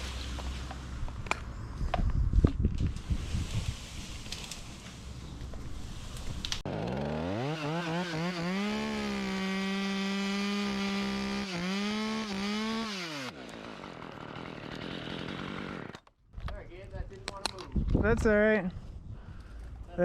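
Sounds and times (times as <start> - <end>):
chainsaw revving: 6.6 - 16.0.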